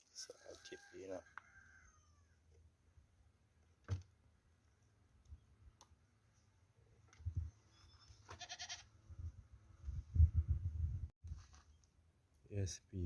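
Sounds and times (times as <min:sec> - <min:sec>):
animal bleating: 0:08.3 - 0:08.9.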